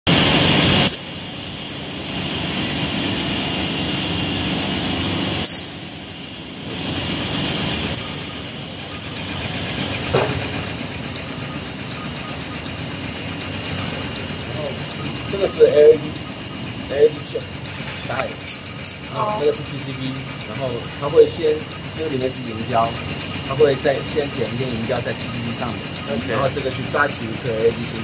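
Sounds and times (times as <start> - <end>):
machinery mechanical drone: 0.1 - 28.0
short hiss: 5.4 - 5.7.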